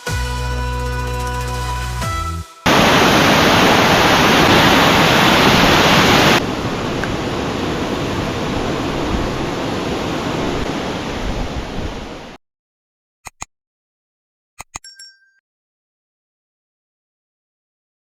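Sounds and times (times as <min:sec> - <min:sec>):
waterfall roaring: 0:02.7 - 0:12.4
sharp clicks: 0:13.3 - 0:13.5, 0:14.6 - 0:14.9.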